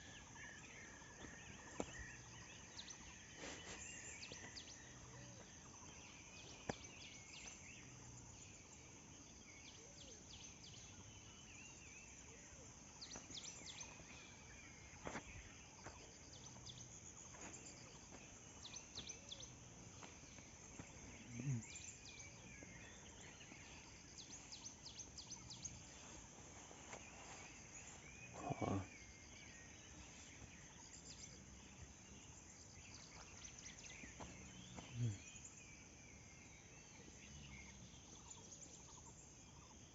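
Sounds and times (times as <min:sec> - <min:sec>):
birds chirping: 0:00.0 - 0:39.9
insect drone: 0:00.0 - 0:39.9
low animal calls: 0:21.0 - 0:21.9, 0:28.2 - 0:29.2, 0:34.8 - 0:35.4.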